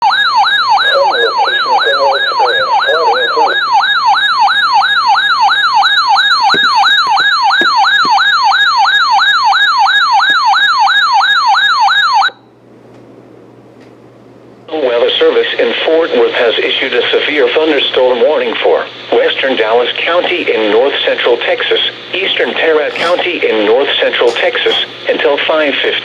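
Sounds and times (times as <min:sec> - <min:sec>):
warbling electronic alert tone: 0:00.6 - 0:09.5.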